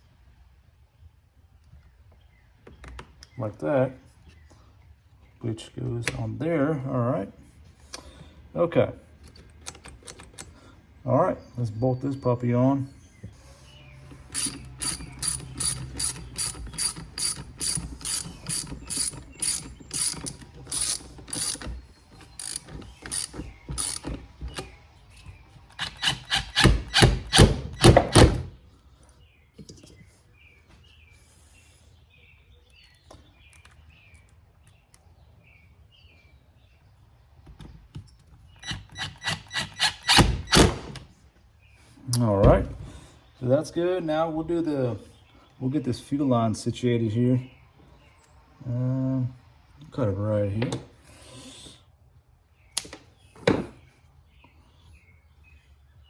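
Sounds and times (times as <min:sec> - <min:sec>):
ratchet wrench clicking: 0:14.3 - 0:24.1, 0:25.7 - 0:27.5, 0:38.6 - 0:40.2.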